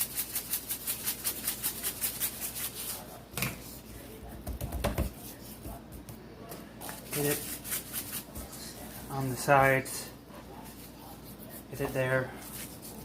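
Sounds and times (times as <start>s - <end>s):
seasoning shaker rattling: 0.0s - 3.0s.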